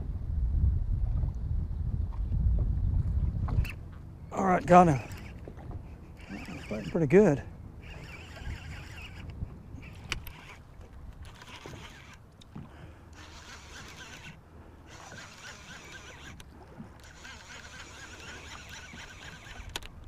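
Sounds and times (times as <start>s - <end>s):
wind rumble on microphone: 0.0s - 14.4s
fishing reel ticking whir: 3.5s - 20.0s.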